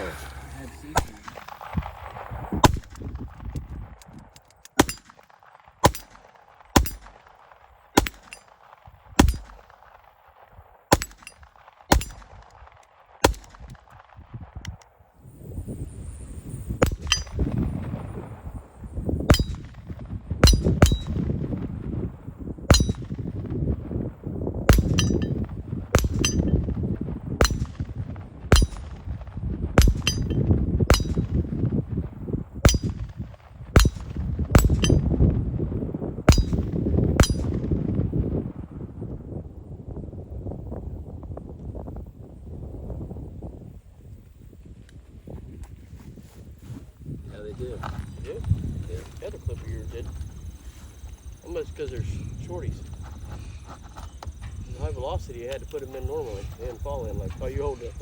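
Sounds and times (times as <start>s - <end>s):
handgun shots: 1.0s - 1.5s, 4.5s - 6.2s, 8.0s - 8.5s, 10.9s - 12.4s, 24.7s - 25.3s.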